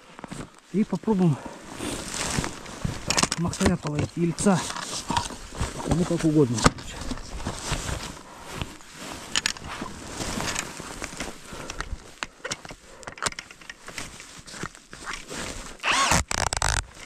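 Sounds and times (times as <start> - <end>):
footsteps crunching through snow: 0.0 - 12.2, 13.8 - 16.2.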